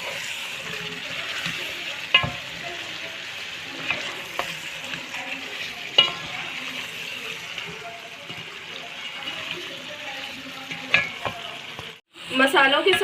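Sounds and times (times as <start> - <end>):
chicken sizzling in hot oil: 0.0 - 13.0
spoon knocking against pan: 2.0 - 2.6.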